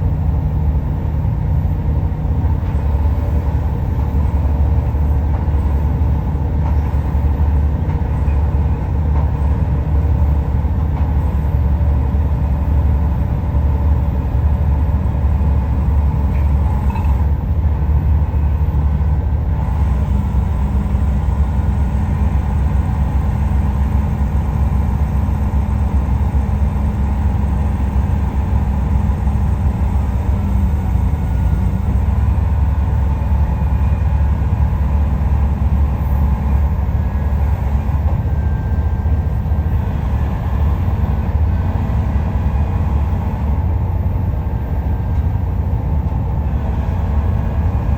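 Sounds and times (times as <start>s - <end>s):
excavator diesel engine rumbling: 0.0s - 47.9s.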